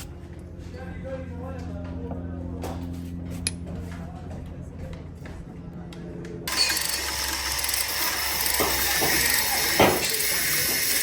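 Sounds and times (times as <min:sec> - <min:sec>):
workshop tool hissing: 0:06.5 - 0:11.0.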